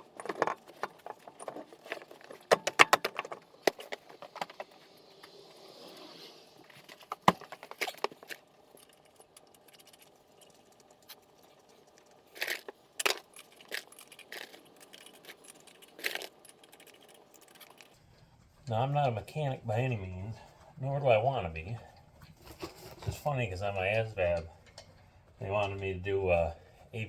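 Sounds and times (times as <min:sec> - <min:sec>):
metal clinks and rattles: 0:06.7 - 0:18.7, 0:24.4 - 0:25.8.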